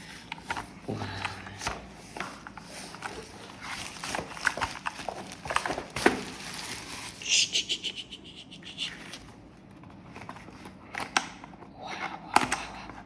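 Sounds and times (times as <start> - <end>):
hands handling keyboard and box: 1.5 - 7.2, 9.1 - 13.0.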